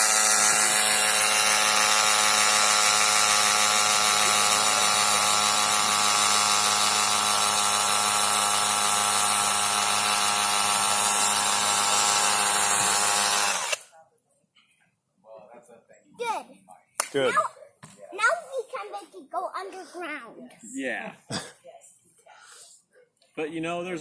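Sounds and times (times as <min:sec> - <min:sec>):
hammer drill drilling: 0:00.0 - 0:13.8.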